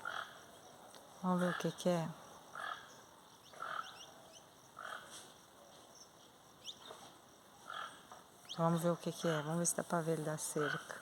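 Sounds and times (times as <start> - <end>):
toucan calling: 2.6 - 5.1.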